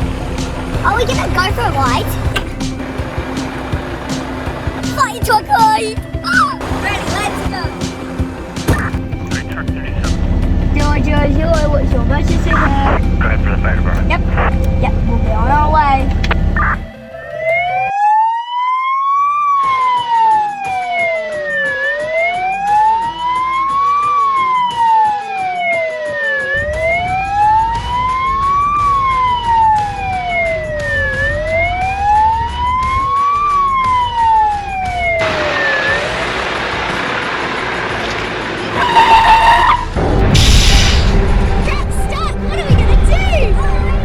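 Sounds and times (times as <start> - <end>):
fire engine siren wailing: 0.0 - 11.4, 12.0 - 44.0
rushing noise: 6.6 - 14.6, 26.5 - 44.0.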